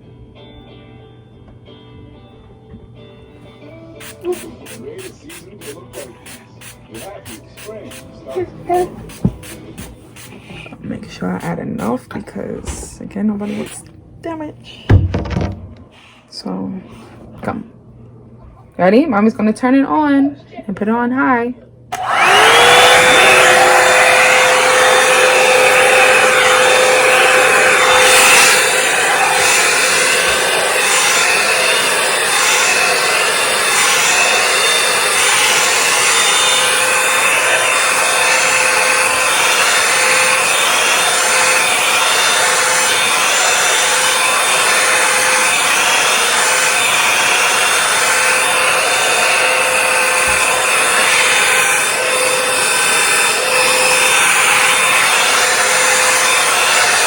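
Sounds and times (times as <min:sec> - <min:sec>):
hair dryer brush running: 0:04.0 - 0:12.8, 0:21.9 - 0:57.0.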